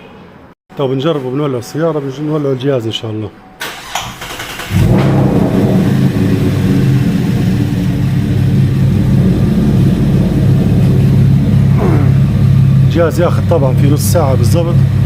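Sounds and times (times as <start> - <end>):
car engine starting and idling: 3.6 - 15.0.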